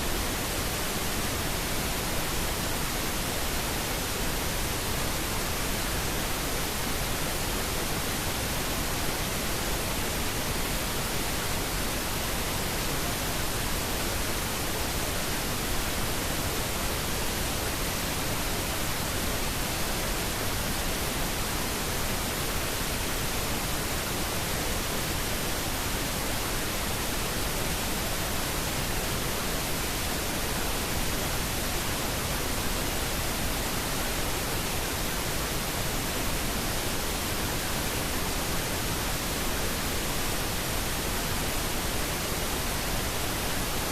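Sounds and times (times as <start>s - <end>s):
white noise hiss: 0.0s - 43.9s.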